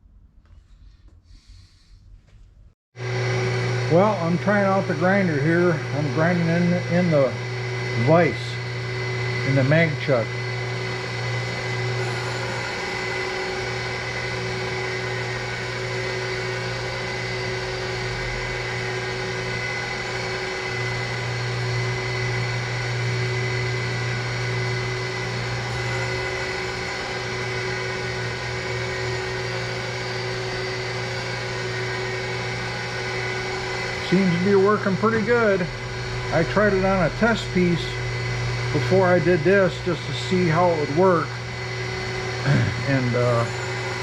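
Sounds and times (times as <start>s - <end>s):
surface grinder grinding: 9.2s - 44.0s.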